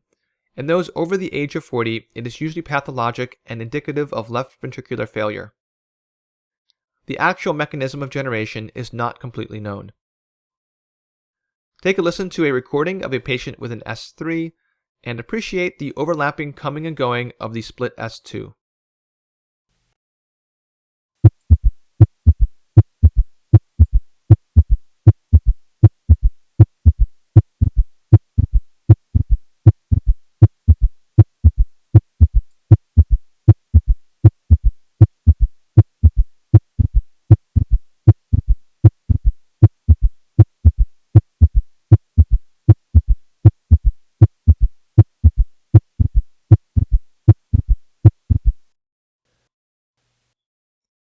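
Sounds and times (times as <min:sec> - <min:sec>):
heartbeat thuds: 0:21.2 - 0:48.7.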